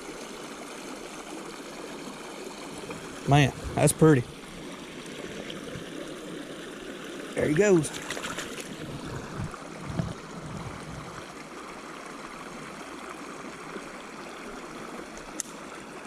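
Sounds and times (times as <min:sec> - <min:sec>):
creek running over rocks: 0:00.0 - 0:16.0
soft low thumps: 0:02.8 - 0:04.3, 0:08.8 - 0:11.2.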